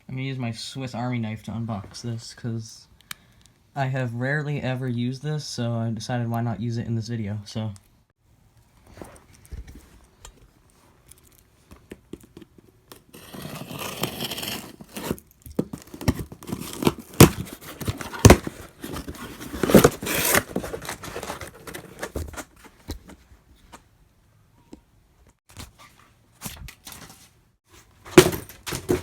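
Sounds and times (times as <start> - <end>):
knife cutting packaging: 12.9 - 22.6
packaging crinkling: 13.2 - 22.7.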